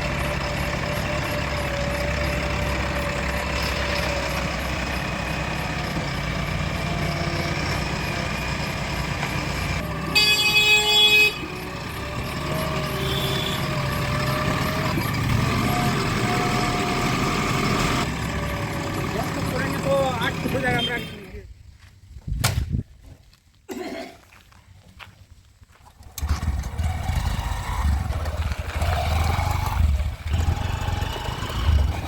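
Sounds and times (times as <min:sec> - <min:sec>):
heavy diesel engines running: 0:00.0 - 0:21.4, 0:26.0 - 0:32.0
vehicle horn: 0:10.0 - 0:11.6, 0:12.8 - 0:13.8, 0:20.6 - 0:21.3.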